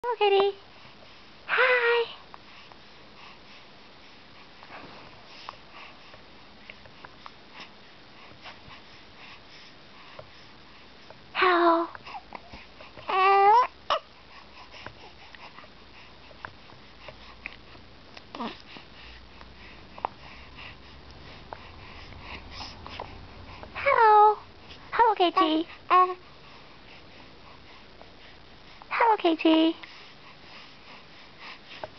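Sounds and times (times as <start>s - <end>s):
baby breathing and sniffing: 2.4s - 11.2s, 12.0s - 13.1s, 13.9s - 23.8s, 24.6s - 28.9s, 29.8s - 31.9s
infant soft vocal sound: 18.3s - 26.3s.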